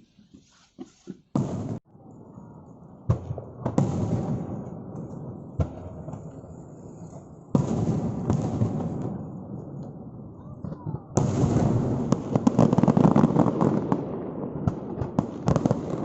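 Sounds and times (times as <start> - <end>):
fireworks crackle: 0.0 - 16.0
fireworks bangs: 1.0 - 16.0.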